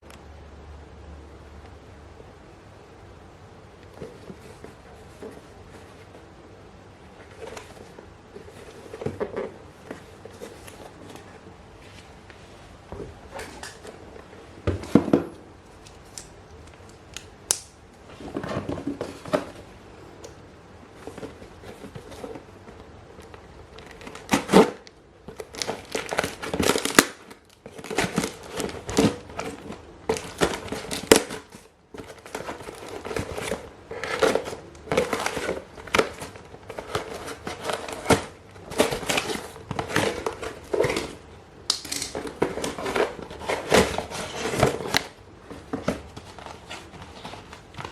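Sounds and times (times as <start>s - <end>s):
packaging crinkling and tearing: 23.1s - 47.9s.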